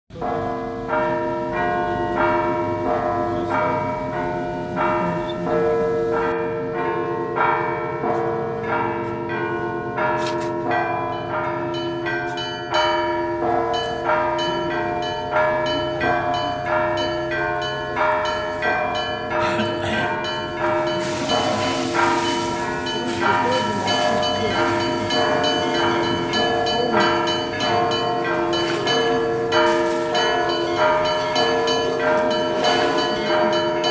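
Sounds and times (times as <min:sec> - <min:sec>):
large bells ringing: 0:00.1 - 0:33.9
small church bells struck: 0:00.1 - 0:33.9.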